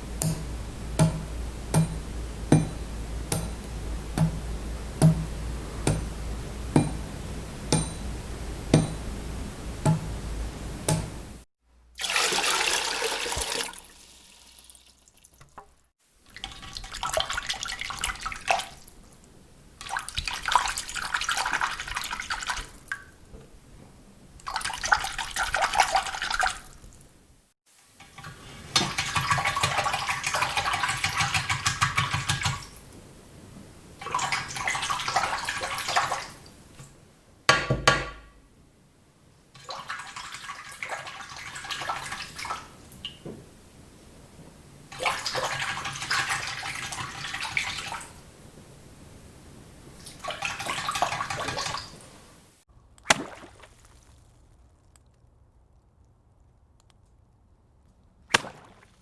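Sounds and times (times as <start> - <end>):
razor rinsed in water splashing: 28.0 - 32.8.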